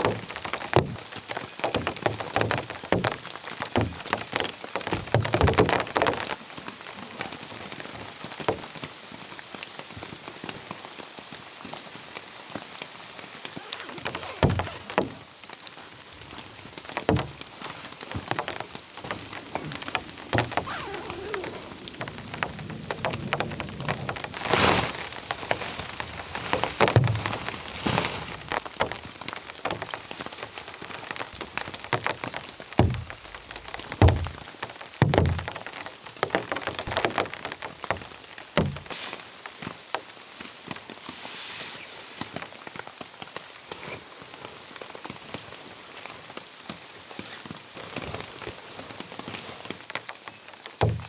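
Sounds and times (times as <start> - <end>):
steady rain falling: 0.0 - 51.0
rustling: 13.3 - 34.6
sharp taps and knocks: 16.9 - 24.1, 32.8 - 35.6.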